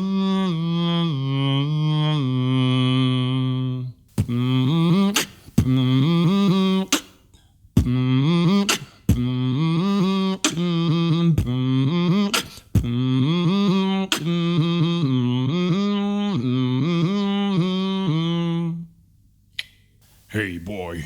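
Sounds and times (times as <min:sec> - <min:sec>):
man humming: 0:00.0 - 0:07.1, 0:07.8 - 0:18.9
beatboxed kick and snare: 0:04.1 - 0:09.4, 0:10.4 - 0:13.1, 0:14.1 - 0:14.4.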